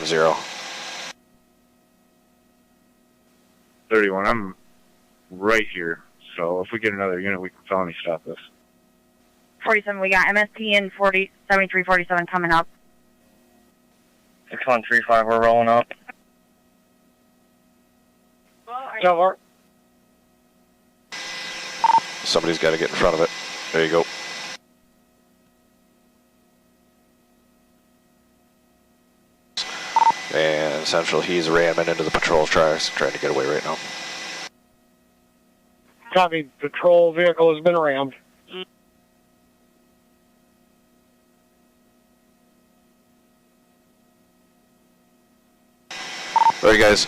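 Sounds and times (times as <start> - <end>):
faint steady hum: 1.1 - 47.0
police radio hiss: 21.2 - 24.5, 29.6 - 33.9, 46.0 - 47.0.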